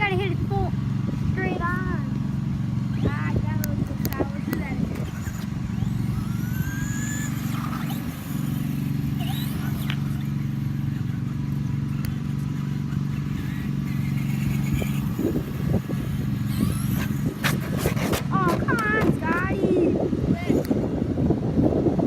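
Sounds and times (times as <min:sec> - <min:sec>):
simulated engine rumble: 0:00.0 - 0:22.0
short rising whines: 0:04.4 - 0:18.4.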